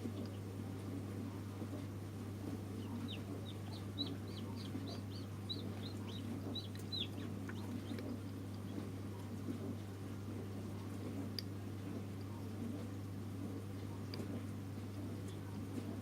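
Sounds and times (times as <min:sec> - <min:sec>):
steady low hum: 0:00.0 - 0:16.0
chicks peeping: 0:01.7 - 0:09.8.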